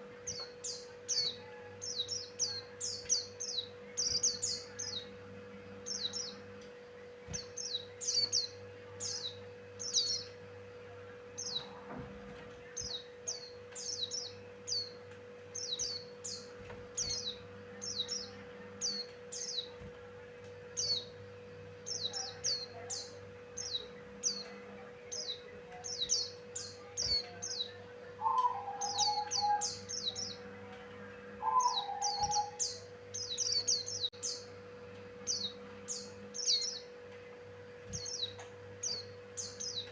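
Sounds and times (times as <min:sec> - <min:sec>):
low electrical hum: 0:00.0 - 0:39.9
bird chirping high: 0:25.1 - 0:30.4, 0:31.4 - 0:34.5
lower bird calls: 0:25.1 - 0:30.4, 0:31.3 - 0:34.2.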